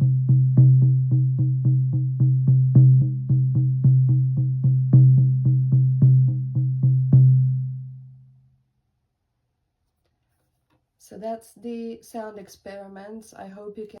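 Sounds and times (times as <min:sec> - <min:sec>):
hand drum beating: 0:00.0 - 0:07.8.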